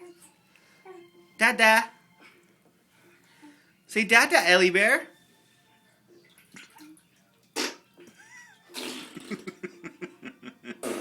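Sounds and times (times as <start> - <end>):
baby blowing a raspberry: 8.7 - 9.4.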